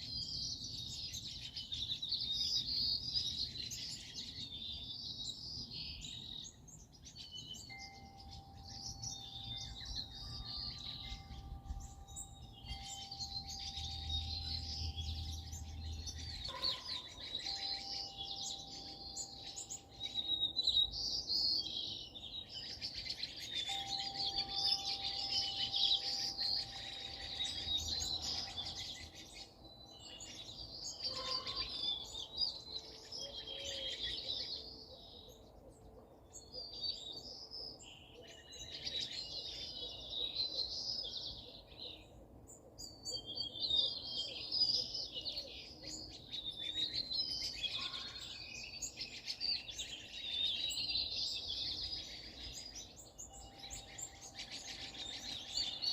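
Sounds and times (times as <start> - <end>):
small birds chirping: 0.0 - 55.9.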